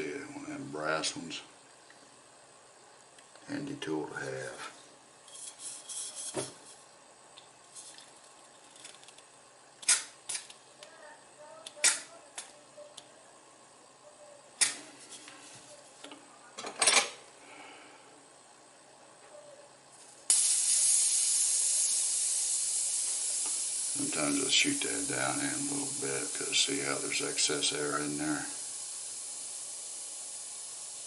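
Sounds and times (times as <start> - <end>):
butane gas hissing: 3.8 - 7.0, 19.9 - 31.0.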